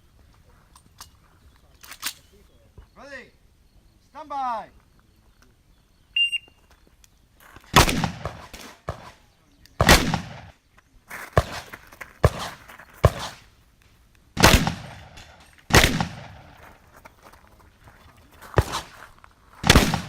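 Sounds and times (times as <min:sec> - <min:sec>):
shotgun shots: 0:07.7 - 0:10.6, 0:11.4 - 0:13.5, 0:14.4 - 0:16.8, 0:18.6 - 0:19.0, 0:19.6 - 0:20.0.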